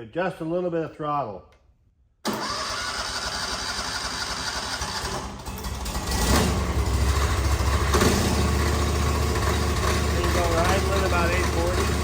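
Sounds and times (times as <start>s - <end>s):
floor grinder engine running: 3.2s - 12.0s.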